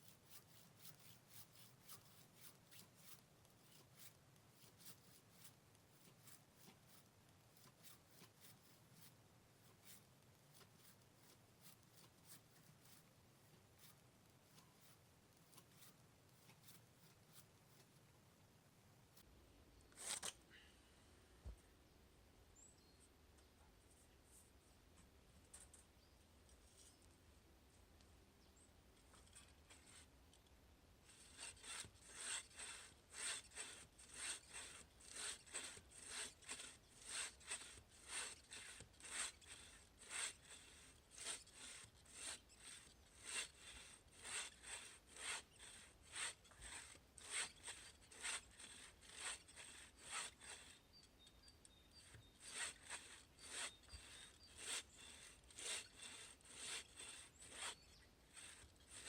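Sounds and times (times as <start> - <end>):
handsaw cutting log: 0.0 - 17.9, 29.2 - 30.1, 31.0 - 59.0.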